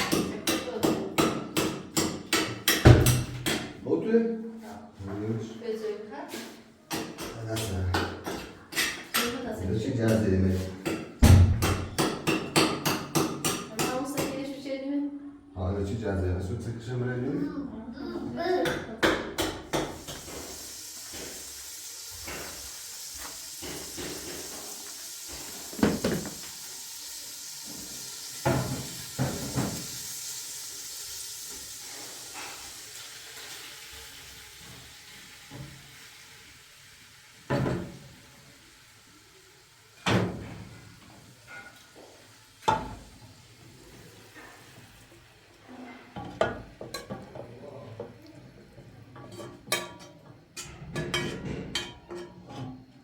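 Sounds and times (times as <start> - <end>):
steady hiss: 19.8 - 45.7.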